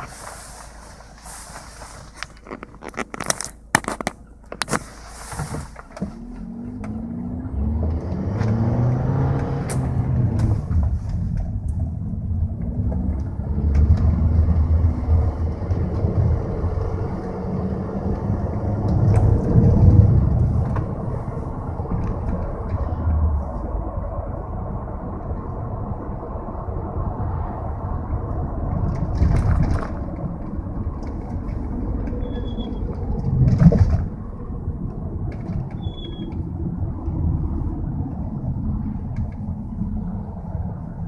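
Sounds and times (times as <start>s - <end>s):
car engine accelerating: 0.0s - 41.0s
road noise rumble: 0.0s - 41.0s
sharp clicks and knocks: 2.1s - 7.0s.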